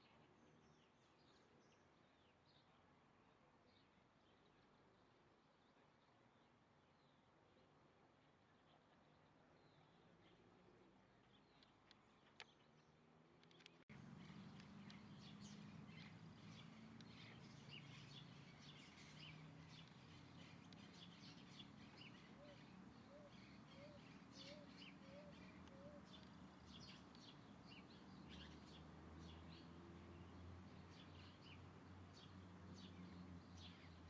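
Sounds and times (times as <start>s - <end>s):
small birds chirping: 11.2s - 34.0s.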